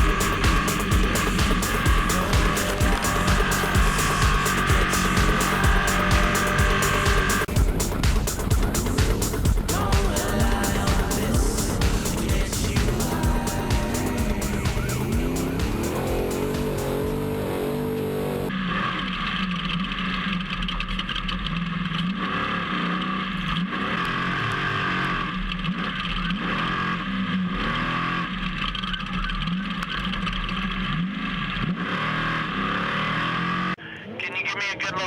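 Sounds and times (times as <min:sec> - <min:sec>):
music playing: 0:00.0 - 0:18.5
truck engine revving: 0:00.0 - 0:19.5, 0:21.5 - 0:35.0.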